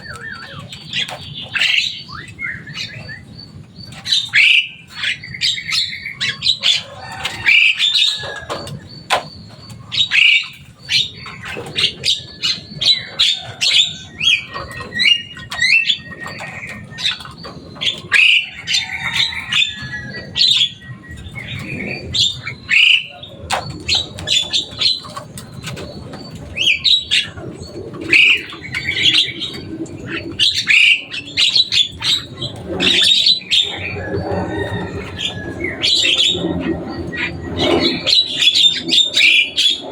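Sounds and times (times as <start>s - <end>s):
myna squawking and chirping: 0.0s - 39.9s.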